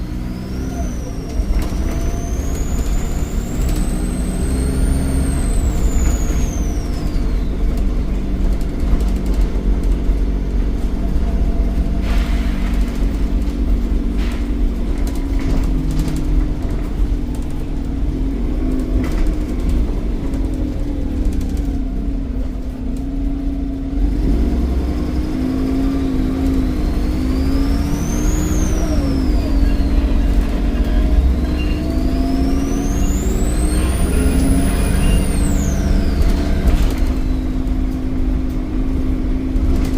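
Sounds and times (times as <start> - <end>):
diesel bus engine drone: 0.0 - 39.9
turbocharger whistle: 0.4 - 7.6, 26.4 - 37.6.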